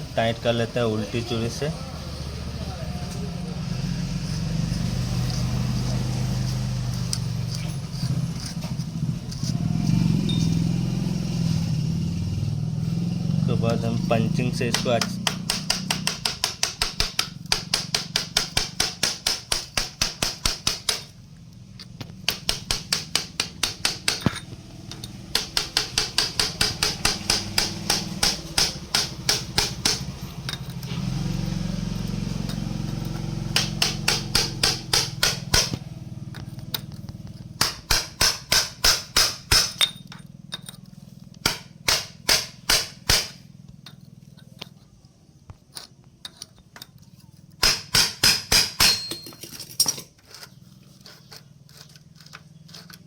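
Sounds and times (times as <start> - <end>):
hammer tapping metal punch: 14.0 - 21.2, 21.8 - 30.9, 31.9 - 44.8, 45.7 - 50.0.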